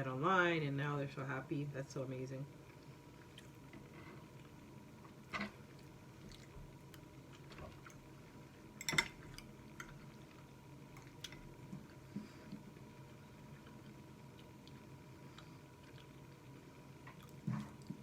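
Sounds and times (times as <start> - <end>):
wet mouth eating noises: 13.4 - 18.0.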